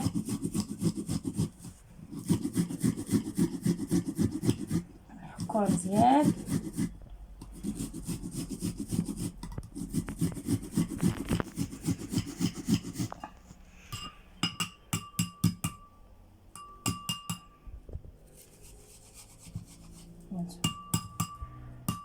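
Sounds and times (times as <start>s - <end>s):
onion grated on hand grater: 0.0s - 13.2s, 18.4s - 20.2s.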